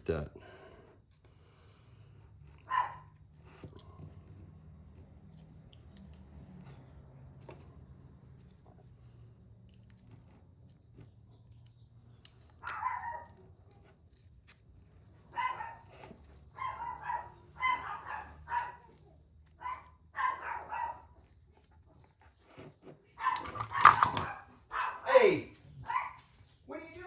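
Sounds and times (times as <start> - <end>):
dog barking: 2.6 - 3.2, 12.6 - 13.4, 15.3 - 21.3, 23.1 - 26.4.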